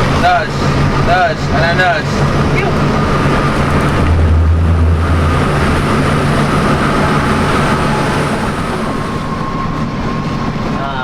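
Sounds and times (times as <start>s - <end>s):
diesel bus engine drone: 0.0s - 11.0s
thin steady whine: 2.9s - 11.0s.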